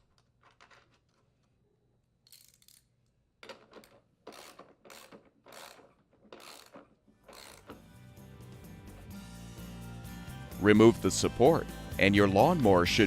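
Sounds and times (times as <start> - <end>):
ratchet wrench clicking: 4.3 - 7.8.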